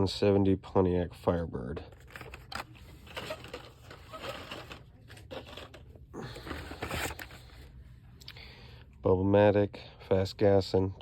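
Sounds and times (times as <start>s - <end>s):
cardboard packages rustling: 1.9s - 7.7s.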